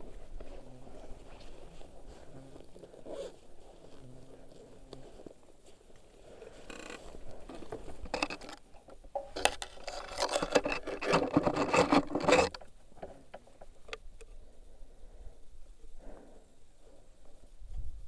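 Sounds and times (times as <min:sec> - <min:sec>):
hard objects scraping and clicking: 0:07.7 - 0:12.7.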